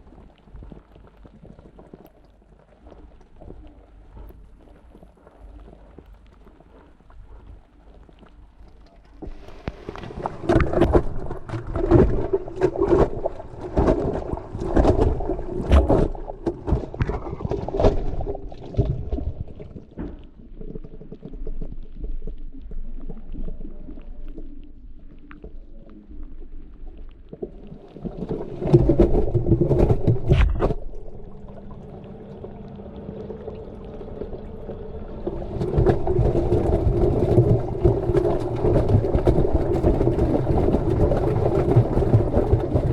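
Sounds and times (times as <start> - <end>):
steady low hum: 28.9 - 38.7.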